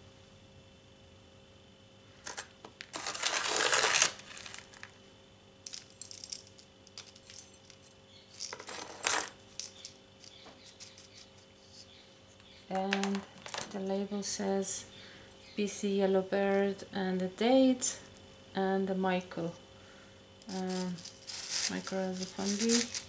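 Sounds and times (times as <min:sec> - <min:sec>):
granules rattling in a pot: 0:02.2 - 0:05.0, 0:05.6 - 0:12.0, 0:12.7 - 0:13.8, 0:20.4 - 0:23.0.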